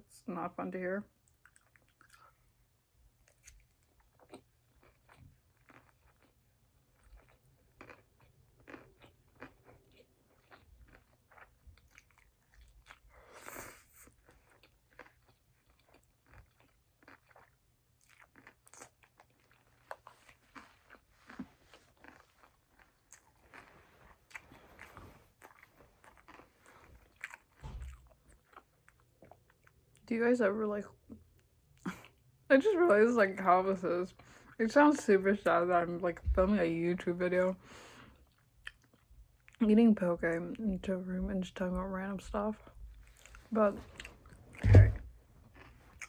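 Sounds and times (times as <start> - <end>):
person chewing food: 1.2 - 30.0, 37.8 - 39.6, 42.6 - 46.0.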